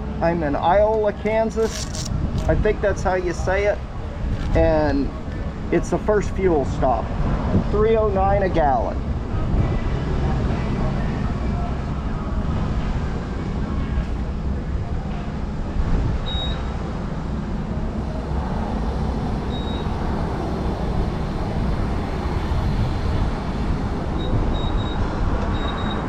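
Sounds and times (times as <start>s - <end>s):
traffic rumble: 0.0s - 26.0s
wind: 0.0s - 26.0s
short high-pitched beeps: 16.3s - 16.6s, 24.2s - 26.0s.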